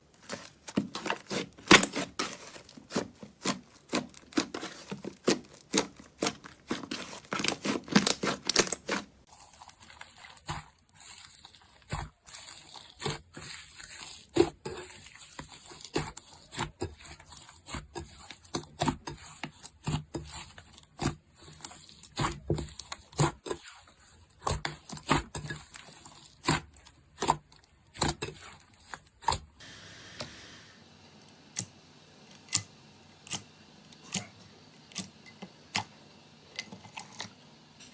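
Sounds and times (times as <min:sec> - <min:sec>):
slime popping and crackling: 0:00.8 - 0:17.1.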